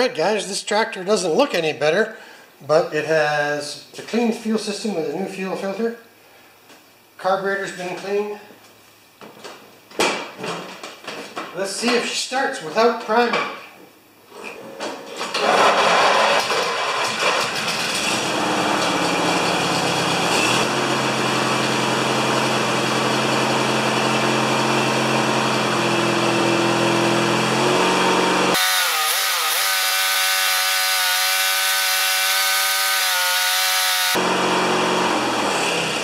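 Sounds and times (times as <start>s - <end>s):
tractor engine starting and running: 15.3s - 36.0s.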